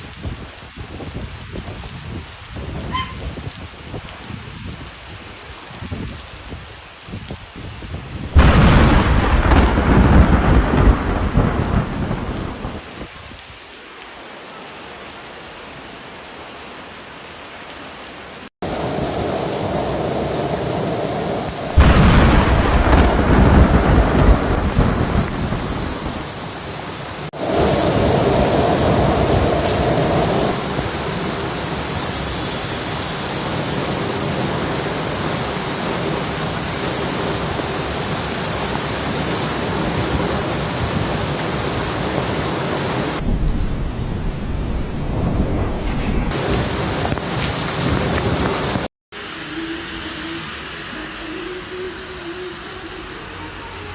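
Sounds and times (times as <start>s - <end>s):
heavy rain: 0.0s - 53.9s
thunder rolling: 7.7s - 13.2s, 18.6s - 32.4s, 42.1s - 48.9s.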